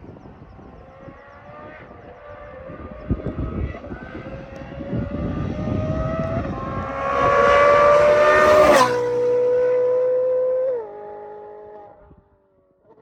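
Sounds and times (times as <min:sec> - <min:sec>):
sports car engine revving: 0:01.1 - 0:09.9.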